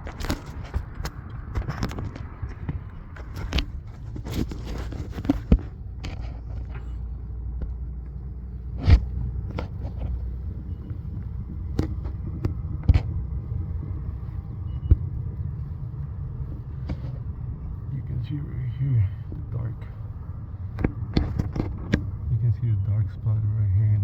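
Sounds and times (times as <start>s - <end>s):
handling knocks and clicks: 0.0s - 15.8s, 16.4s - 17.8s, 19.3s - 22.2s
steady low rumble: 0.0s - 24.0s.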